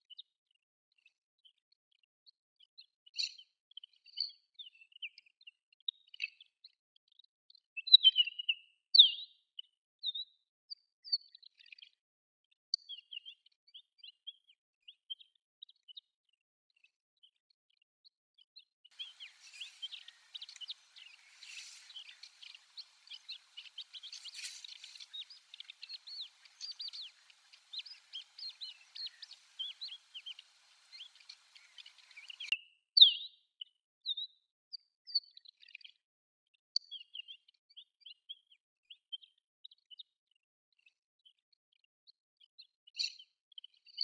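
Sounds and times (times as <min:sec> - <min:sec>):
bird chirping and twittering: 0:18.9 - 0:33.3.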